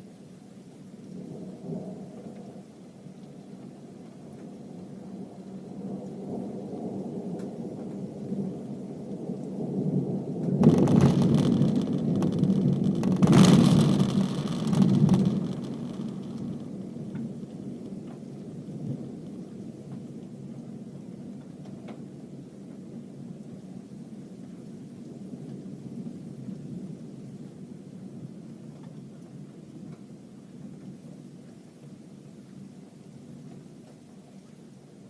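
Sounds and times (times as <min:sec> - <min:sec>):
thunder rumbling and crashing: 0:10.0 - 0:19.3.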